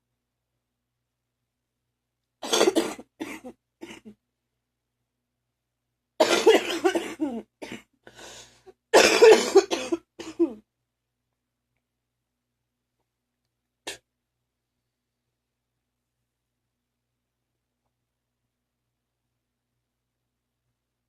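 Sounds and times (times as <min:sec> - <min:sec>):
person coughing wetly: 0:02.4 - 0:04.2, 0:06.2 - 0:07.9, 0:08.9 - 0:10.6.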